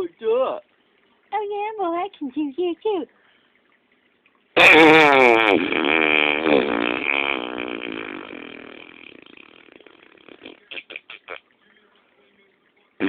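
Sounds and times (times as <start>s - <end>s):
long buzzy fart: 4.6s - 11.5s.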